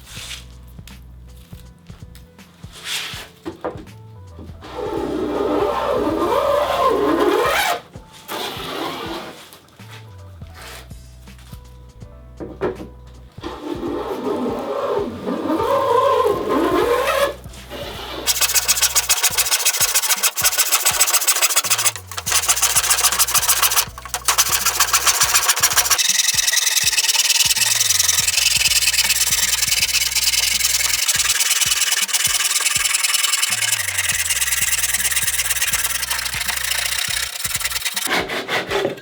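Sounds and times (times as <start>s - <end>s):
background music with bass: 0.0s - 8.8s, 9.8s - 19.0s
hand tool cutting wood: 13.4s - 39.0s.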